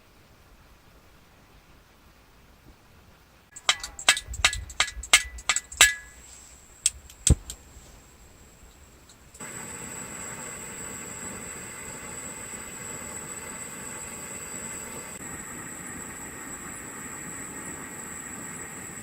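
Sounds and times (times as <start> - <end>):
steady hiss: 0.0 - 19.0
metal camping gear clinking: 3.5 - 7.7.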